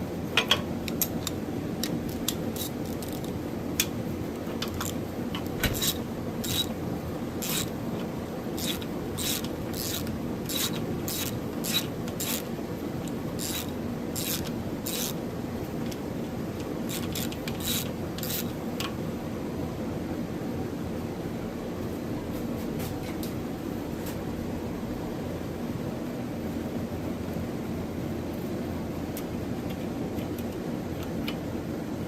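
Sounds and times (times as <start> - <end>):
steady low hum: 0.0 - 32.0
metal parts scraping: 5.6 - 6.7, 7.4 - 7.8, 8.6 - 12.5, 13.4 - 15.2, 16.9 - 18.6.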